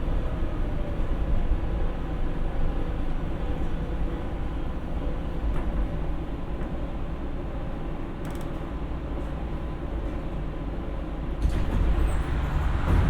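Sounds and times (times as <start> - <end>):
light rail car rumble: 0.0 - 13.0
faint clicks and creaks: 8.2 - 8.7.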